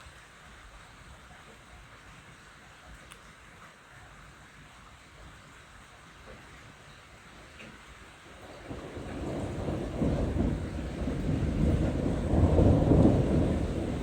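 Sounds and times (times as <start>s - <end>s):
thunder rumbling: 8.4s - 14.0s.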